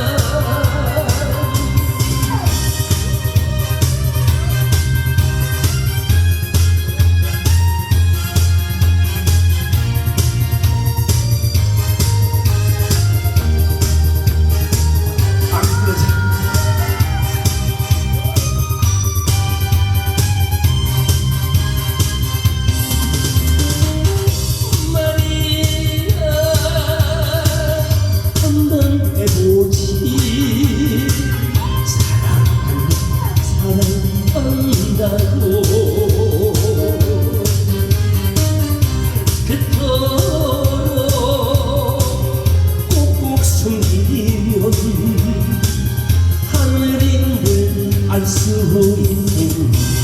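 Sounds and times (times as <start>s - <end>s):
trot song with heavy bass beat: 0.0s - 50.0s
melody line with vibrato: 15.2s - 20.2s.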